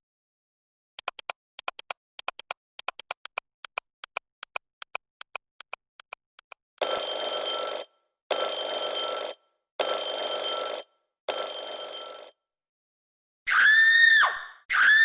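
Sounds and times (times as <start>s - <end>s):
loud scream: 13.5s - 15.0s.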